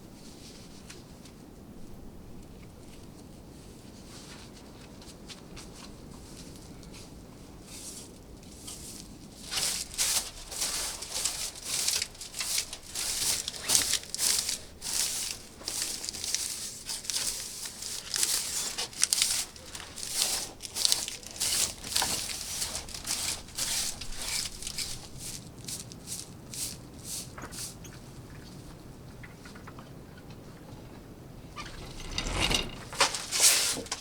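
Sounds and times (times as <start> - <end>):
crunching and crinkling: 8.5 - 34.0.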